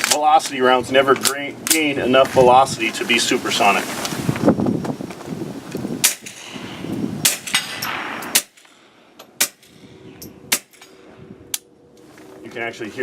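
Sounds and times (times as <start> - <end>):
suppressed gunshots: 7.2 - 8.7
bullets hitting steel target: 7.2 - 11.0.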